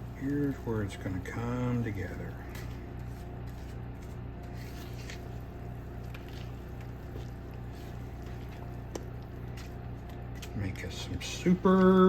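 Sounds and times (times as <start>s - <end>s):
batter folded in mixing bowl: 0.0s - 12.0s
low electrical hum: 0.0s - 12.0s.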